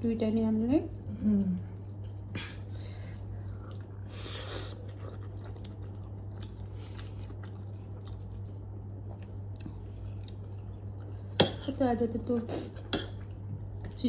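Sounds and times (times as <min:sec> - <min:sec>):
steady low hum: 0:00.0 - 0:14.0
person chewing noodles: 0:00.9 - 0:11.6.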